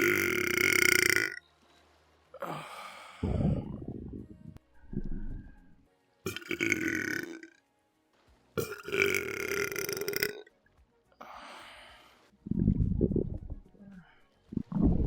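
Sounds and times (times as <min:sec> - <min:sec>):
rough belches: 0:00.0 - 0:01.4, 0:06.3 - 0:07.5, 0:08.6 - 0:10.5.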